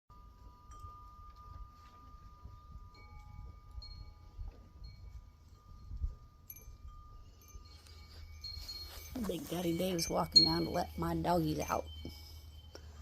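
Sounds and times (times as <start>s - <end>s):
wind chimes ringing: 0.1s - 13.0s.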